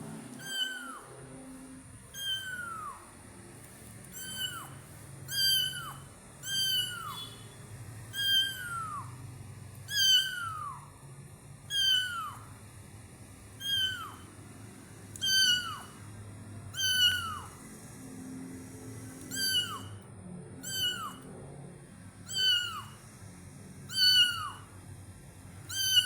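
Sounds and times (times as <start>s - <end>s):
kitten meowing: 0.3s - 1.1s, 2.1s - 3.0s, 4.1s - 7.4s, 8.1s - 9.1s, 9.8s - 10.9s, 11.7s - 12.5s, 13.6s - 14.3s, 15.2s - 16.0s, 16.7s - 17.6s, 19.2s - 20.0s, 20.6s - 21.3s, 22.2s - 23.0s, 23.9s - 24.7s, 25.7s - 26.0s.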